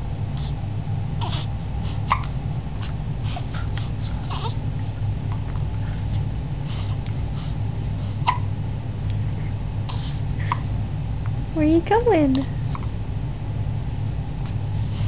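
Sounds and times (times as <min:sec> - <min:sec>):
steady low hum: 0:00.0 - 0:15.0
soft baby vocal sounds: 0:00.3 - 0:00.6, 0:01.2 - 0:04.6
baby hiccupping: 0:08.2 - 0:08.5.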